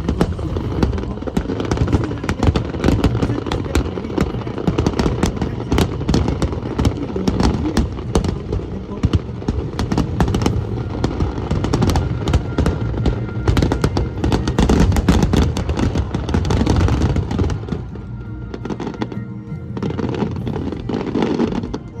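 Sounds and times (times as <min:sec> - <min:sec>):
fireworks bursts and crackling: 0:00.0 - 0:22.0
loud background music: 0:09.3 - 0:22.0.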